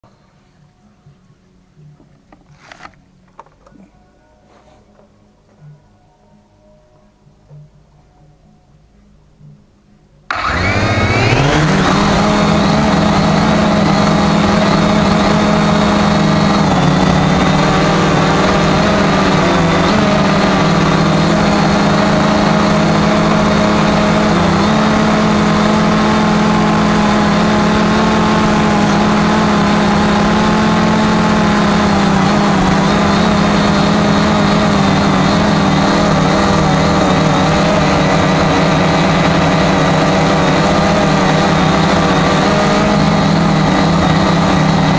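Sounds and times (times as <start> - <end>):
quadcopter propellers humming: 10.3 - 44.9.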